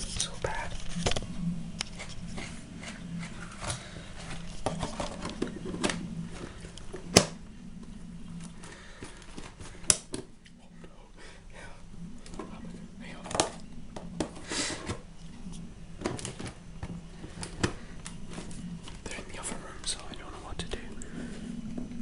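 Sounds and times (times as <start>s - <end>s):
steady low hum: 0.0s - 22.0s
clicks and knocks of items handled: 0.1s - 7.4s, 8.4s - 10.3s, 13.2s - 19.6s.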